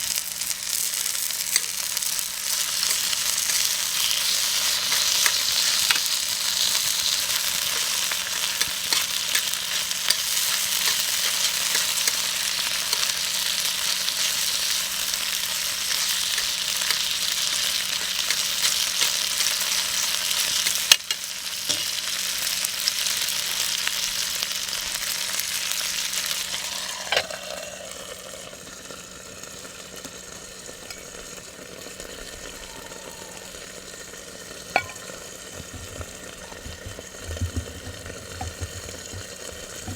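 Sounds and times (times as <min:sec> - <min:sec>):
meat sizzling in a frying pan: 0:00.0 - 0:39.9
knock: 0:35.6 - 0:39.9.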